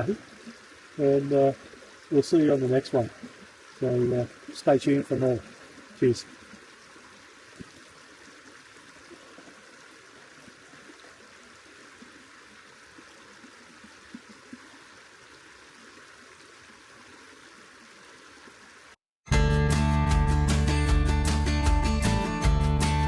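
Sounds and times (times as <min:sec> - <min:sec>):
river water flowing: 0:00.0 - 0:19.0
small water pops: 0:07.5 - 0:07.9.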